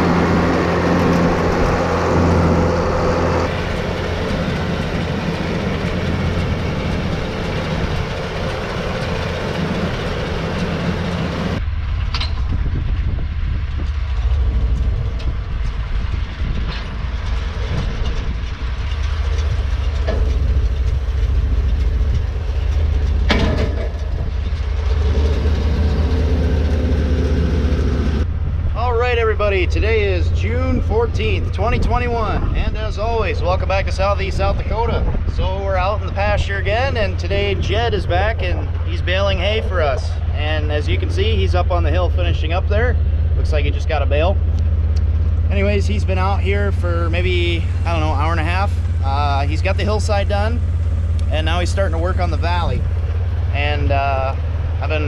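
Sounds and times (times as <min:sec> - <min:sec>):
vehicle engine rumbling: 0:00.0 - 0:55.0.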